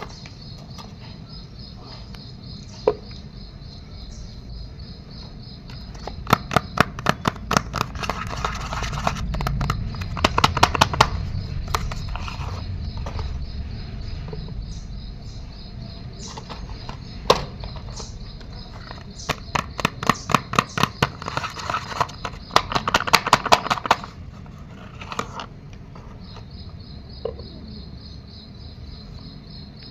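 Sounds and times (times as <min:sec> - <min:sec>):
crickets chirping: 0:00.0 - 0:29.9.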